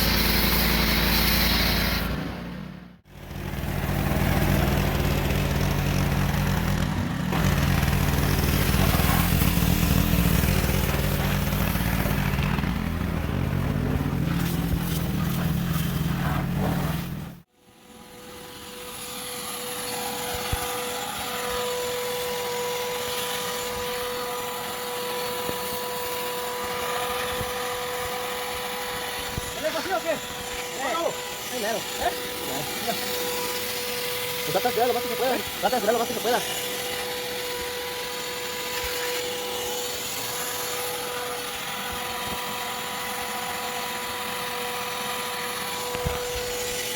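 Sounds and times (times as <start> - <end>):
spray hissing: 0.0 - 2.2
pressure washer whine: 0.0 - 46.9
low engine hum: 2.3 - 17.5.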